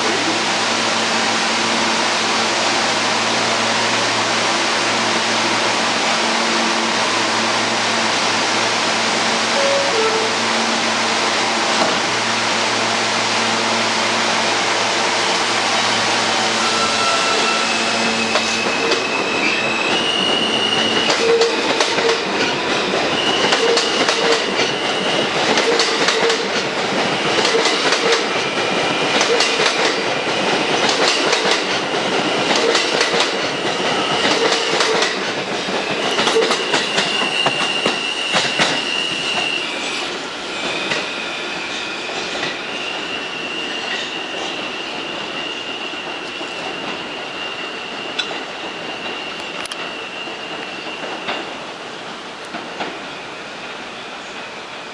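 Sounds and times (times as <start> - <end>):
high squealing: 15.7 - 21.2.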